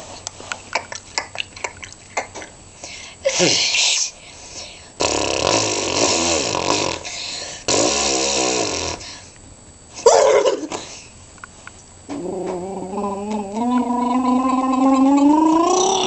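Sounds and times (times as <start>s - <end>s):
raspy throat noises: 0.2s - 4.1s, 4.7s - 9.2s, 12.2s - 16.0s
person squealing: 12.2s - 16.0s.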